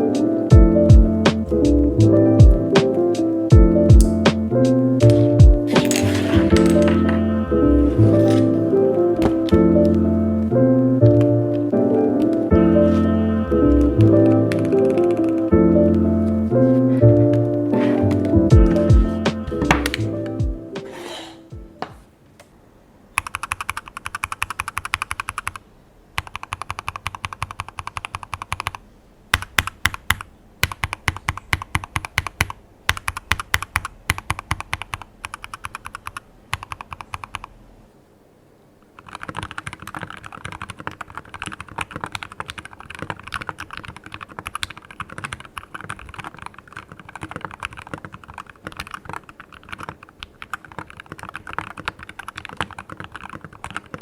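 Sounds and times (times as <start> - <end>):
mechanical keyboard typing: 5.0 - 7.1, 14.2 - 15.5, 23.2 - 25.6, 26.2 - 37.5, 39.0 - 54.0.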